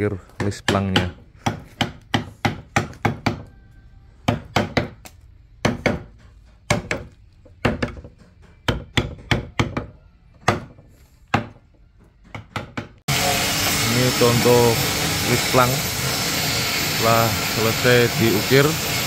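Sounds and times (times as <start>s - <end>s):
mallet striking chisel into wood: 0.4s - 3.5s, 4.2s - 11.6s, 12.2s - 13.0s.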